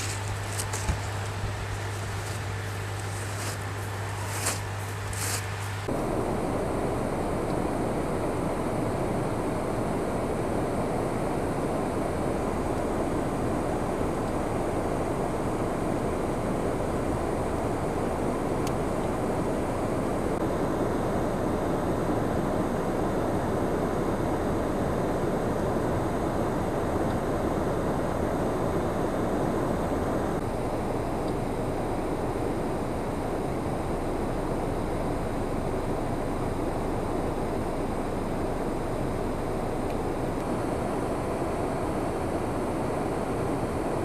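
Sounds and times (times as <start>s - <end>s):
steady rushing noise: 0.0s - 6.1s.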